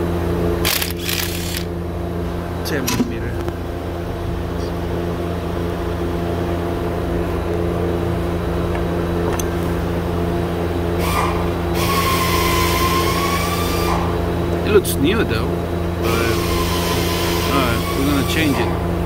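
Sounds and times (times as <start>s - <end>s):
steady low hum: 0.0s - 19.0s
electric ratchet whirring: 0.6s - 1.8s, 10.9s - 14.2s, 16.0s - 19.0s.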